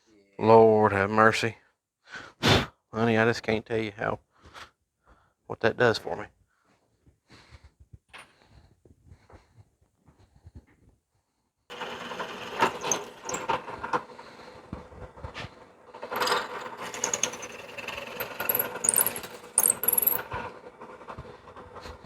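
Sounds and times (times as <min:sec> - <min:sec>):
drill bit squealing: 0:11.7 - 0:20.5
drill press motor hum: 0:11.7 - 0:21.7
rattling and clicking: 0:11.7 - 0:22.0.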